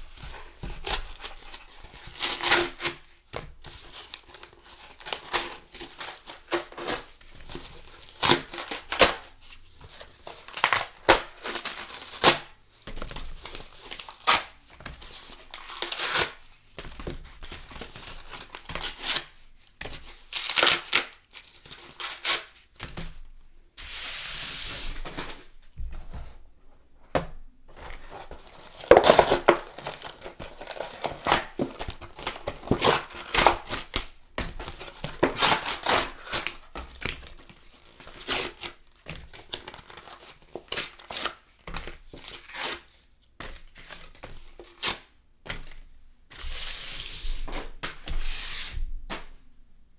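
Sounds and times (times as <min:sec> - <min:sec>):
cardboard tearing: 0:27.7 - 0:34.0, 0:34.7 - 0:37.3
tissue box ripping and crinkling: 0:27.8 - 0:34.0, 0:34.8 - 0:36.5.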